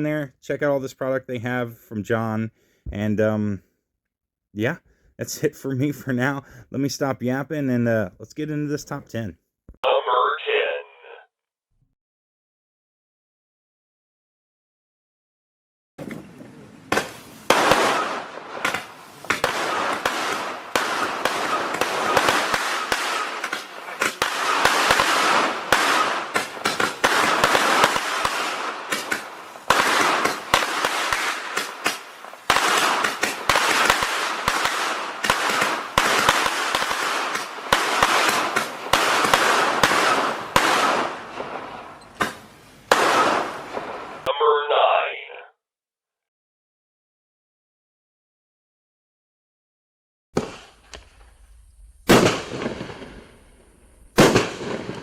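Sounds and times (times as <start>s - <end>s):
fireworks crackling and banging: 16.0s - 44.3s, 50.4s - 55.0s.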